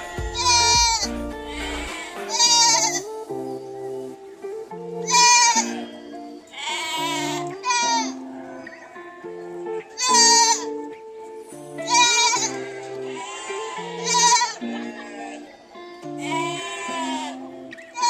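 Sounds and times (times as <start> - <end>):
goat bleating: 0.0 - 3.1, 5.0 - 8.2, 10.0 - 10.8, 11.8 - 15.6, 16.2 - 18.0
background music: 0.0 - 18.0.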